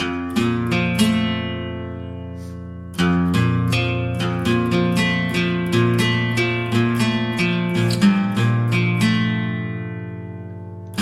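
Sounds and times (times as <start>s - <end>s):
acoustic guitar strumming chords: 0.0s - 11.0s.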